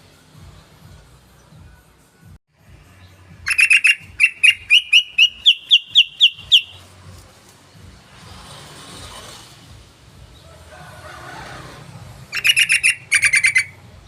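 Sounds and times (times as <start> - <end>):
bird song with upswept notes: 0.0 - 8.1, 12.2 - 14.0.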